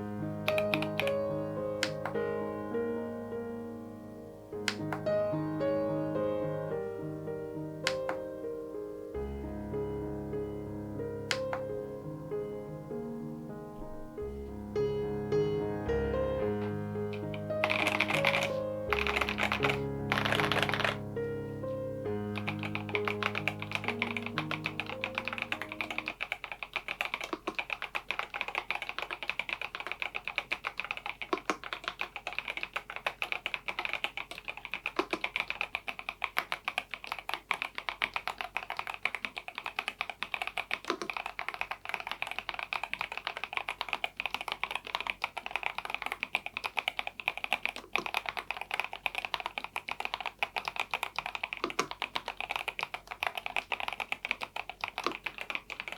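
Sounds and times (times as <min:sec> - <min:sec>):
fast typing on mechanical keyboard: 0:00.0 - 0:02.3, 0:04.7 - 0:05.2, 0:16.6 - 0:21.1, 0:22.2 - 0:55.9
background music: 0:00.0 - 0:26.2.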